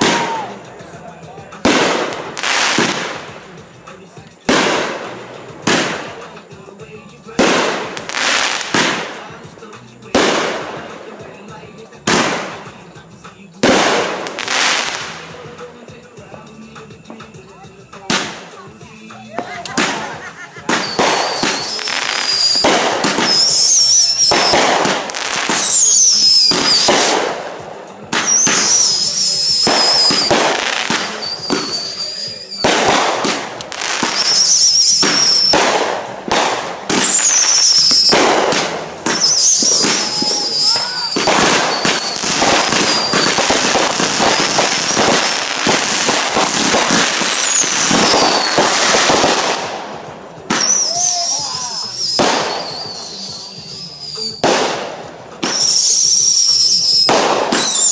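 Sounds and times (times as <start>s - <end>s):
fireworks bangs and pops: 0.0s - 57.9s
fireworks whistling: 0.0s - 57.9s.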